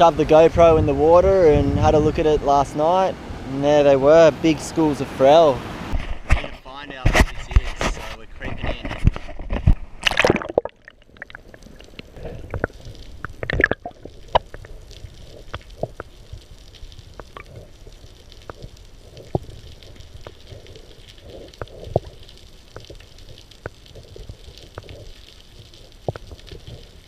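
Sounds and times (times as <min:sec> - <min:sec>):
underwater clicks and pops: 0:08.6 - 0:16.1.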